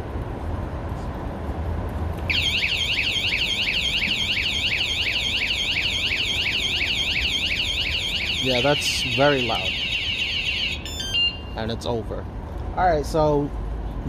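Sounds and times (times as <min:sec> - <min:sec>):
warbling alarm siren: 0:02.3 - 0:11.7.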